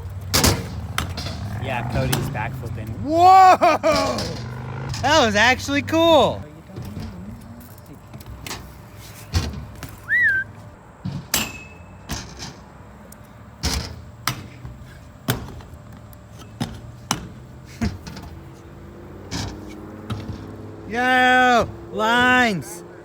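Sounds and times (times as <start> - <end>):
bike tires and frames landing: 0.0 - 22.6.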